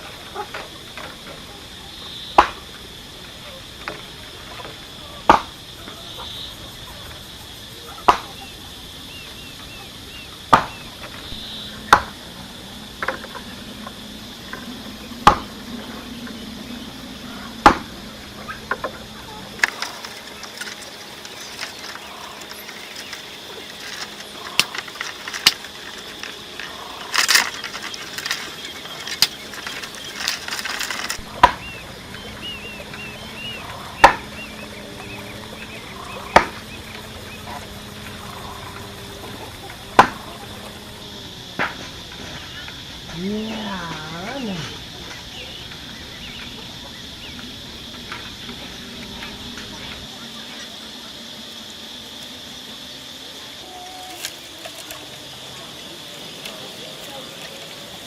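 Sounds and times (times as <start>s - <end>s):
rustling: 10.4s - 43.7s
blade knocking bamboo: 10.5s - 12.2s, 15.2s - 15.6s, 17.6s - 33.1s, 33.7s - 40.5s.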